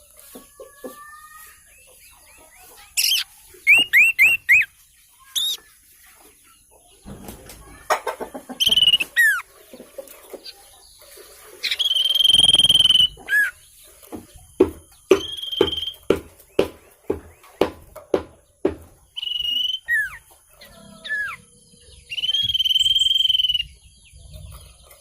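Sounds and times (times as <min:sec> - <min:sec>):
buzzy bird trill: 0:02.9 - 0:05.6, 0:08.6 - 0:09.4, 0:11.6 - 0:13.7, 0:15.1 - 0:16.1, 0:19.2 - 0:23.8
bird whistling calls: 0:03.0 - 0:04.7, 0:08.6 - 0:09.4, 0:11.6 - 0:13.6, 0:15.1 - 0:16.1, 0:19.2 - 0:24.3.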